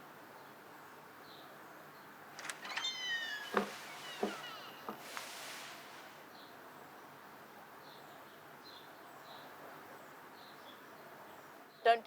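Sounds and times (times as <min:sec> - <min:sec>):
faint background hiss: 0:00.0 - 0:12.0
small birds chirping: 0:01.3 - 0:06.9.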